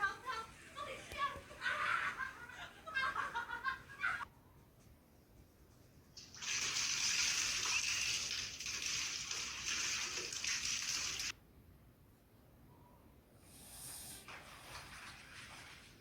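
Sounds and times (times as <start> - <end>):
running water rushing: 6.2 - 11.3.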